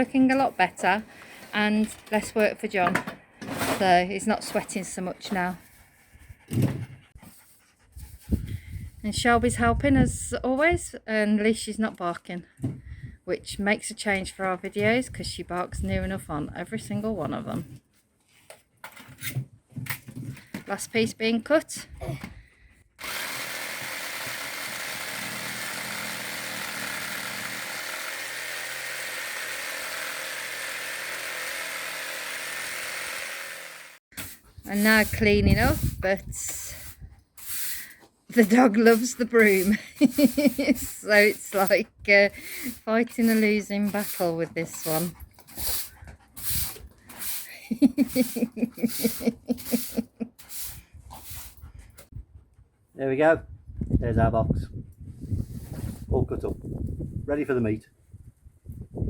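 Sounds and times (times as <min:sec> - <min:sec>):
jigsaw cutting wood: 0:23.0 - 0:34.0, 0:38.4 - 0:41.8, 0:42.4 - 0:45.1, 0:47.4 - 0:50.0
broom sweeping ground: 0:34.2 - 0:41.8, 0:42.6 - 0:51.6, 0:55.3 - 0:56.1.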